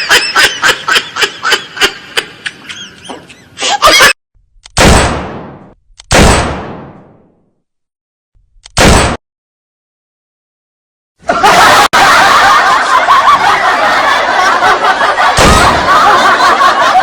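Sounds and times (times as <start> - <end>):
crowd of voices laughing: 0.0 - 4.2, 11.2 - 17.0.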